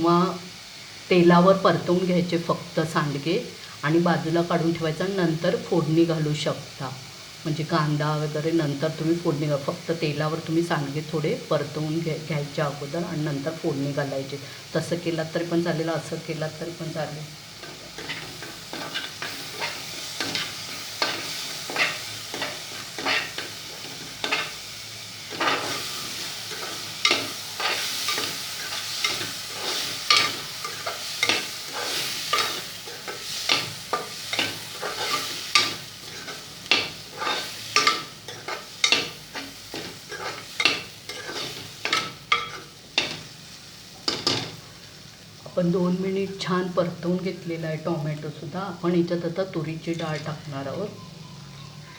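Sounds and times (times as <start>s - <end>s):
frying sizzle: 0.0s - 51.9s
spatula scraping pan: 17.6s - 43.3s.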